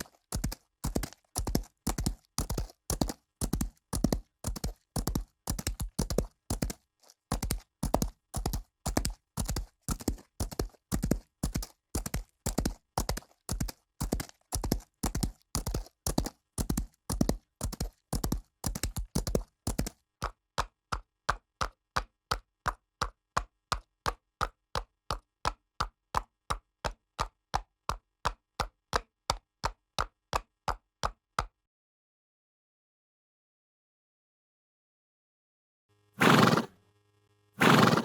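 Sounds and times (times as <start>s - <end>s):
horse hoofbeats: 0.0s - 26.3s, 36.2s - 36.8s, 37.6s - 38.0s.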